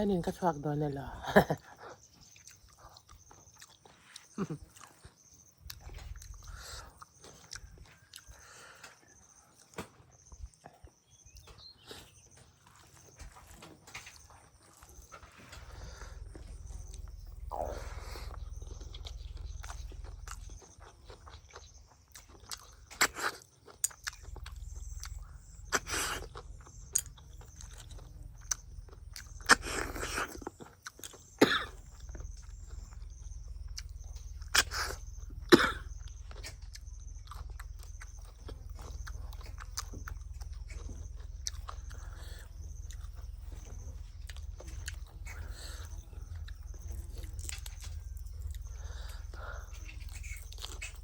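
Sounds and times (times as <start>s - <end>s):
steady low hum: 0.0s - 23.1s, 23.7s - 51.0s
person chewing and biting: 2.3s - 51.0s
sharp clicks and crunches: 11.3s - 51.0s.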